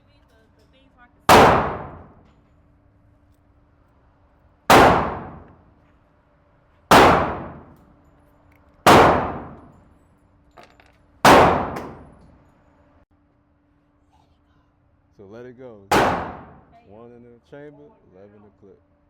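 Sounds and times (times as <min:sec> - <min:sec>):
pistol shots with echo: 0:01.3 - 0:02.3, 0:04.7 - 0:05.6, 0:06.9 - 0:07.8, 0:08.8 - 0:09.8, 0:11.2 - 0:12.2, 0:15.9 - 0:16.7.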